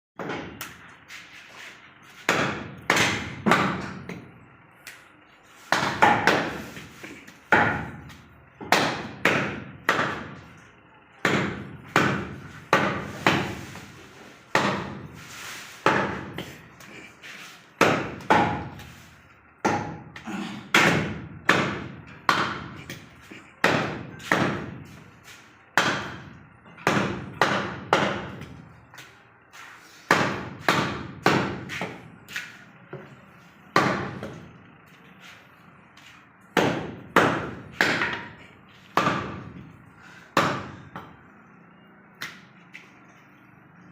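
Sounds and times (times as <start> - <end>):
cleaver chopping meat and bone: 2.2 - 4.3, 5.7 - 6.6, 7.5 - 10.4, 11.2 - 13.6, 14.5 - 15.0, 15.8 - 16.6, 17.8 - 18.7, 19.6 - 24.8, 25.8 - 28.6, 30.1 - 32.0, 33.7 - 34.4, 36.6 - 39.6, 40.3 - 41.0.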